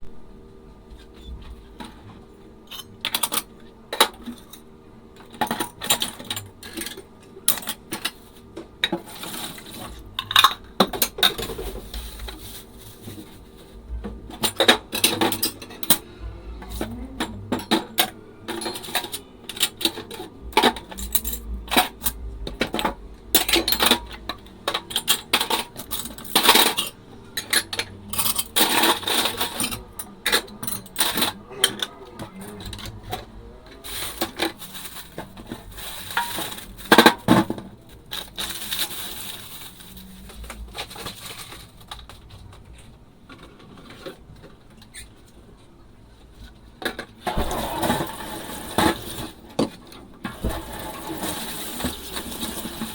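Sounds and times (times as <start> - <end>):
dishes and cutlery clinking: 8.8 - 42.2.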